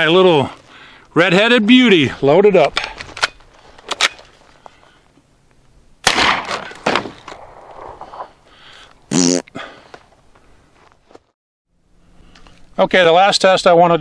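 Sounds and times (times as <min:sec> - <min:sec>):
gunshots: 0:06.0 - 0:08.0.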